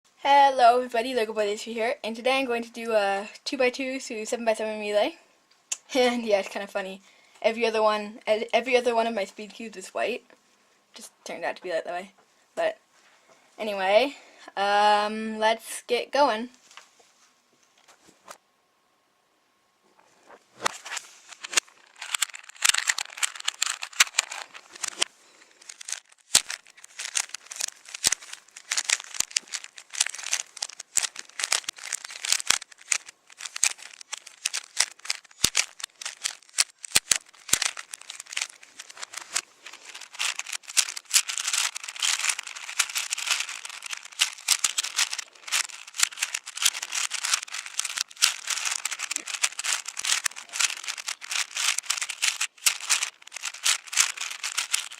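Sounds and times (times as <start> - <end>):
plastic cubes clicking rattle: 21.3 - 54.9.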